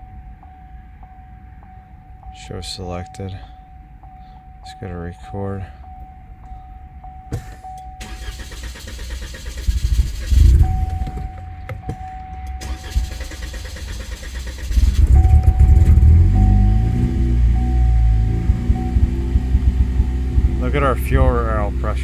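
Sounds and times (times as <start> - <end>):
car engine cranking and starting: 7.3 - 22.0.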